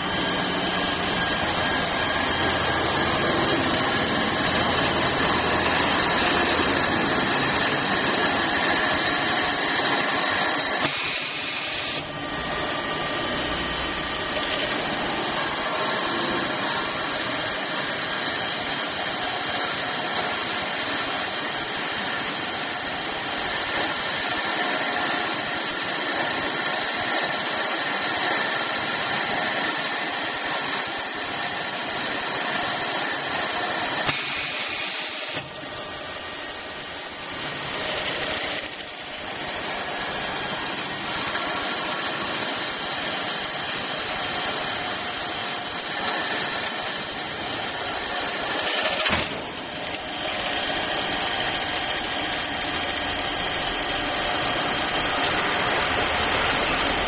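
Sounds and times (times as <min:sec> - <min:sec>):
machine cutting metal: 0:00.0 - 0:57.0.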